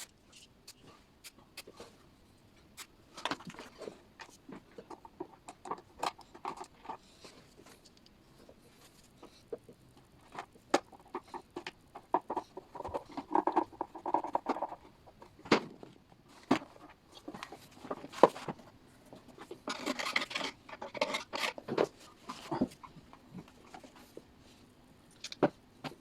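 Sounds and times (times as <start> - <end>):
small clicks and knocks of parts: 3.1 - 8.2, 25.1 - 26.0.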